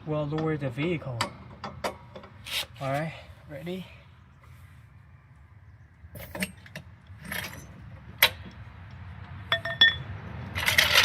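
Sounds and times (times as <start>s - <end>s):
car jack and tools clanking: 0.2s - 2.6s, 6.2s - 11.0s
ringing metallic clink: 9.5s - 10.1s.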